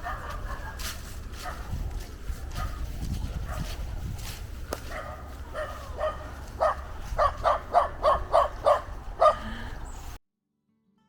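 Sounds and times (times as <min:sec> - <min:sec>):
wind rumble on microphone: 0:00.0 - 0:10.2
dog yapping: 0:05.0 - 0:09.4.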